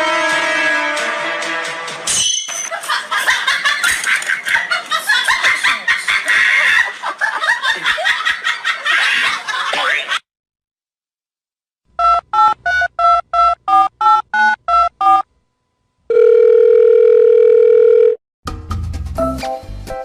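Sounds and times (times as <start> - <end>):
laughter in quick bursts: 2.7 - 10.2.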